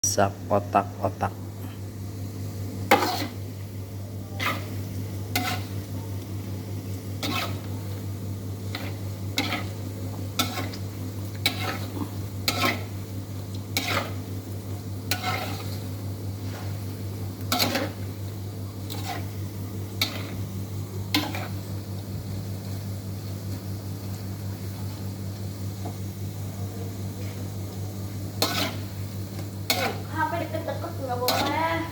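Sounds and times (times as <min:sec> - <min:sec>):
steady low hum: 0:00.0 - 0:31.9
fish cakes sizzling in oil: 0:01.8 - 0:31.9
spatula scraping pan: 0:02.8 - 0:03.5, 0:04.3 - 0:05.9, 0:07.1 - 0:08.0, 0:08.6 - 0:14.4, 0:15.0 - 0:18.1, 0:18.8 - 0:20.5, 0:21.1 - 0:21.7, 0:28.3 - 0:31.9.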